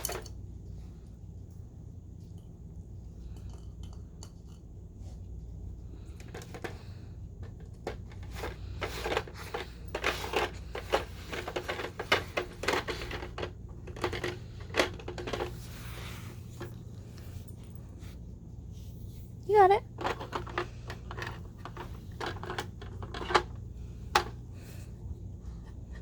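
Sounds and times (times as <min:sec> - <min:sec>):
steady low hum: 0:00.0 - 0:26.0
clicks and clatters from puzzle box: 0:06.1 - 0:15.8, 0:20.0 - 0:23.6.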